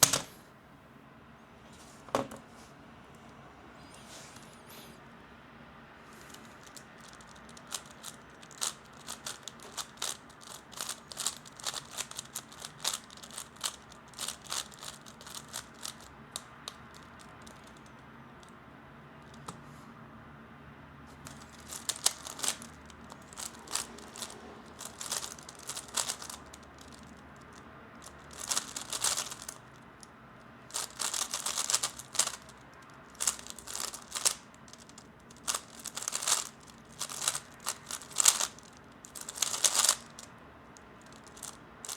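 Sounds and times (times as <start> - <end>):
puzzle cube clicking: 6.4 - 16.1, 21.3 - 29.6, 30.7 - 32.5, 33.1 - 40.3.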